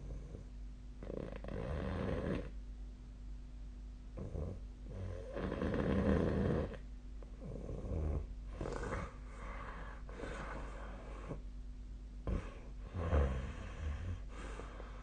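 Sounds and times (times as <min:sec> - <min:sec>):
faint steady hum: 0:00.0 - 0:15.0
person snoring: 0:01.0 - 0:02.5, 0:04.2 - 0:06.8, 0:07.4 - 0:11.4, 0:12.3 - 0:15.0.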